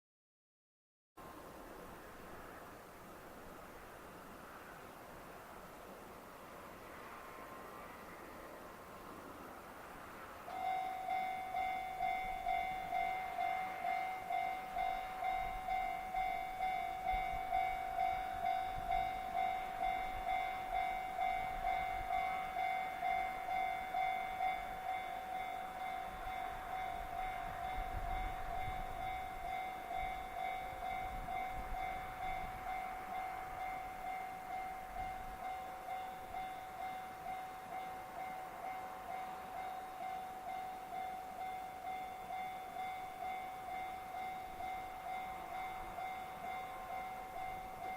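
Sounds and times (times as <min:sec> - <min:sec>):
level-crossing alarm ringing: 0:10.5 - 0:47.9.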